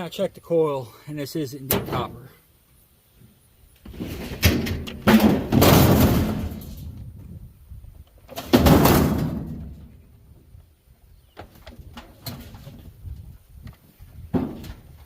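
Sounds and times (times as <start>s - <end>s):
metal knocks and clanks: 3.9s - 6.9s, 8.4s - 9.9s
scrap metal crashing: 3.9s - 6.9s, 8.4s - 9.8s.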